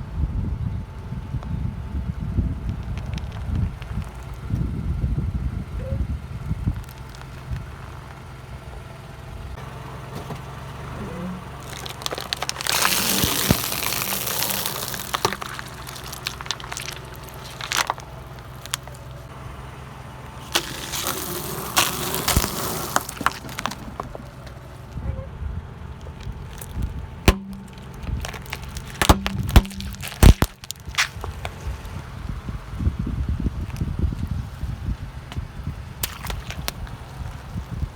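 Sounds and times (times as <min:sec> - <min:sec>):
car engine running: 0:00.7 - 0:37.9
tyre crushing objects: 0:11.0 - 0:19.3, 0:20.4 - 0:24.9, 0:26.0 - 0:31.8, 0:36.0 - 0:37.0.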